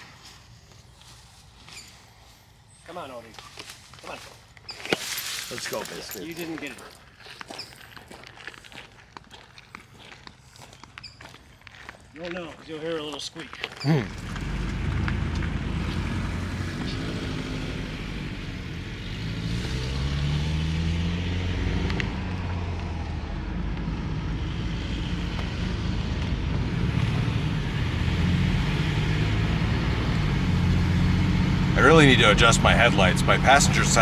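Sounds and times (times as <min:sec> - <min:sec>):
road noise: 0:00.0 - 0:34.0
van engine hum: 0:13.8 - 0:34.0.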